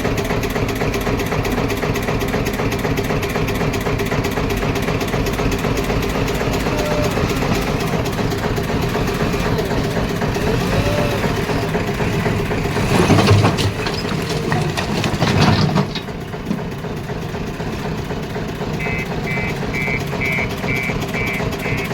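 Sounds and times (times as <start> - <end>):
backhoe diesel engine running: 0.0 - 21.9
short high beeps: 18.8 - 21.9.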